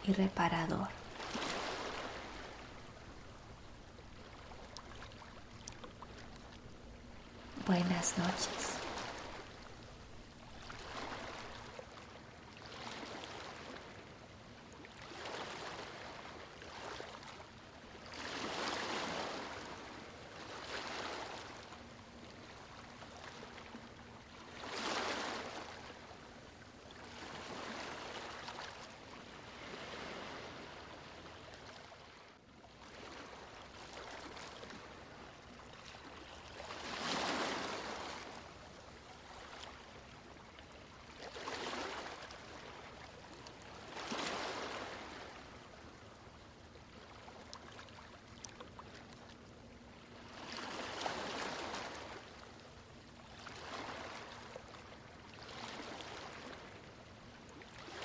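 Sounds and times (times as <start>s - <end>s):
gentle ocean waves washing: 0.0s - 40.5s
larger waves breaking: 1.0s - 6.7s.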